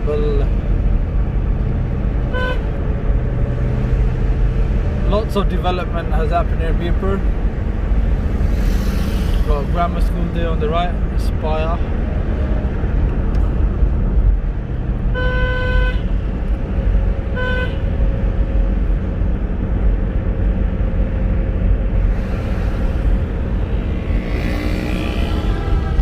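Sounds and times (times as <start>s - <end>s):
car driving low rumble: 0.0s - 26.0s
car horn tooting: 2.3s - 2.7s, 15.1s - 16.1s, 17.3s - 17.8s.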